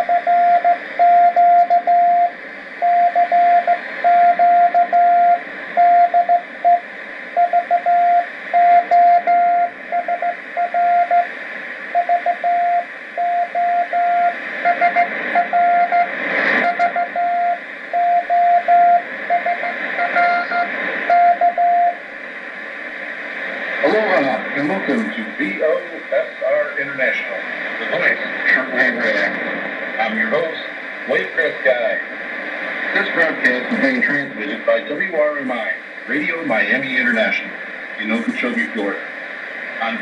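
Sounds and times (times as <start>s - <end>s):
morse code keyed tone: 0.0s - 6.8s, 7.4s - 11.3s, 11.9s - 22.0s
radio hiss and static: 0.0s - 40.0s
static crash: 22.1s - 40.0s.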